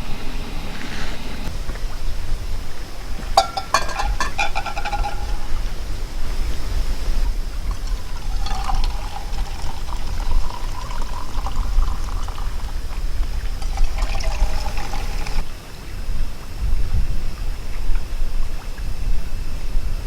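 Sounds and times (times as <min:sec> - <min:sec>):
liquid pouring into a cup: 0:03.4 - 0:05.6, 0:07.6 - 0:15.4.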